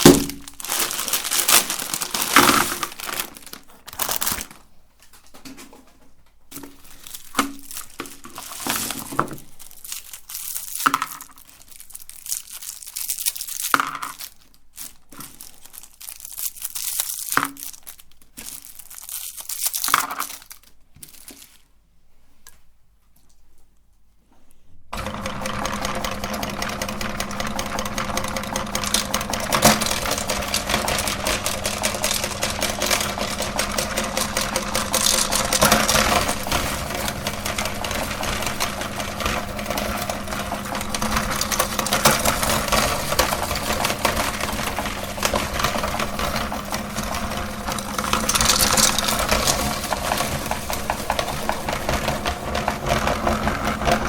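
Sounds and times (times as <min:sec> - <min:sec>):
candy crunching in grinder: 0:00.0 - 0:04.7, 0:06.5 - 0:21.7, 0:25.0 - 0:54.0
electric meat grinder motor hum: 0:25.0 - 0:54.0.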